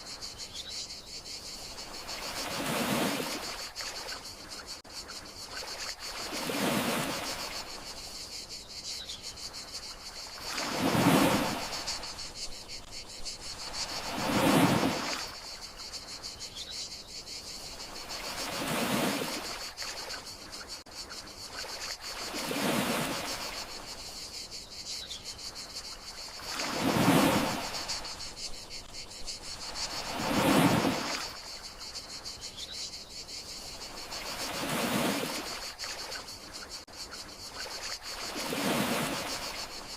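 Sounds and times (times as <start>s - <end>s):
crickets trilling: 0.0s - 39.9s
sea waves washing onto shore: 10.4s - 12.2s, 13.6s - 15.5s, 29.6s - 31.4s, 34.0s - 36.2s, 37.8s - 39.9s.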